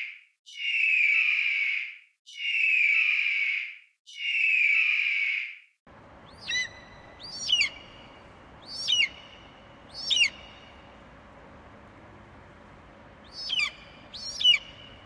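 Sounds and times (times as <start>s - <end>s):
background hiss: 5.9s - 15.0s
short sharp bird calls: 6.2s - 11.0s, 13.2s - 15.0s.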